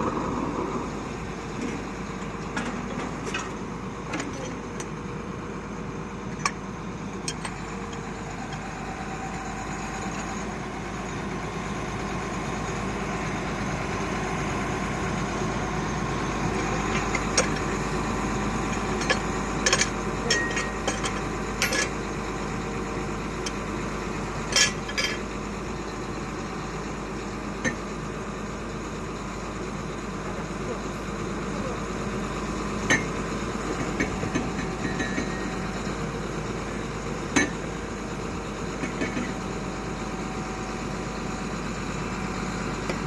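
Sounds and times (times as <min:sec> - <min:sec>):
drilling rig engine running: 0:00.0 - 0:43.0
metallic clinks and clanks: 0:18.7 - 0:22.0.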